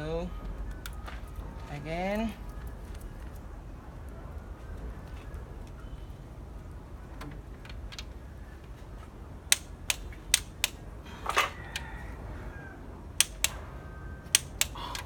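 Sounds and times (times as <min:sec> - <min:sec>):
torque wrench clicking: 0:09.5 - 0:10.8, 0:13.2 - 0:13.6, 0:14.3 - 0:15.0.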